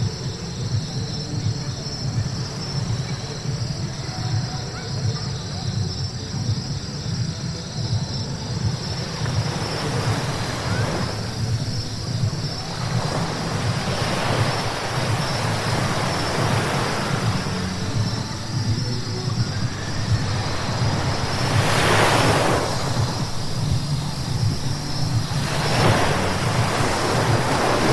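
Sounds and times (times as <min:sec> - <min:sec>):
car road rumble: 0:00.0 - 0:27.9
tyres hissing on wet asphalt: 0:08.7 - 0:27.9.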